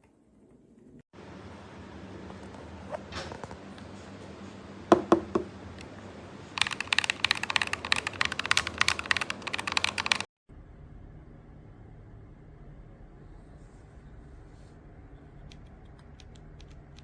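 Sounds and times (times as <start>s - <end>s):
mechanical keyboard typing: 6.6s - 10.3s, 15.4s - 17.0s.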